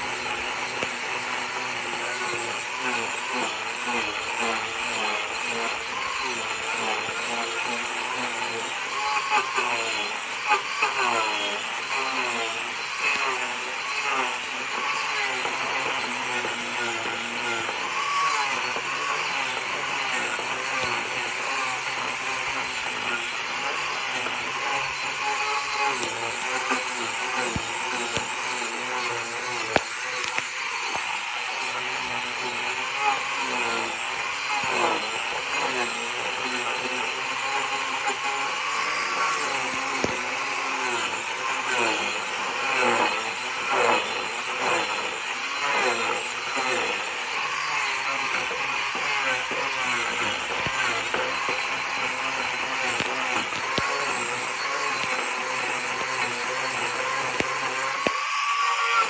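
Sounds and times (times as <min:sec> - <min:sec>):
angle grinder grinding wood: 0:00.0 - 0:59.0
scattered clicks: 0:29.0 - 0:31.1.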